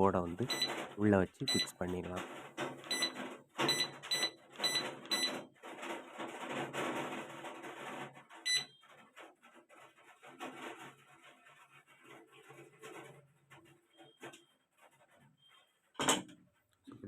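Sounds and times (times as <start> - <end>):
control panel beeps: 0.5 - 0.7, 1.5 - 1.7, 2.9 - 5.4, 8.5 - 8.8.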